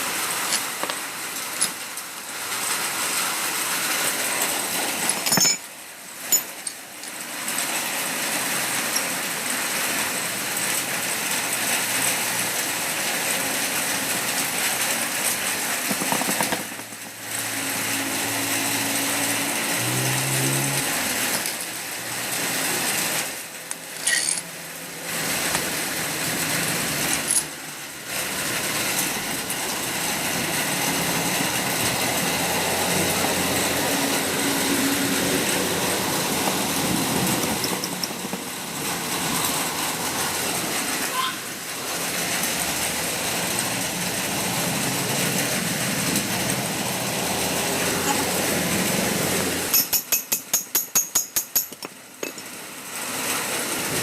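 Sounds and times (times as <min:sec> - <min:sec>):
mechanical workshop noise: 0:00.0 - 0:12.5, 0:13.1 - 0:54.0
sharp metal knocks: 0:05.1 - 0:05.6, 0:49.7 - 0:52.5.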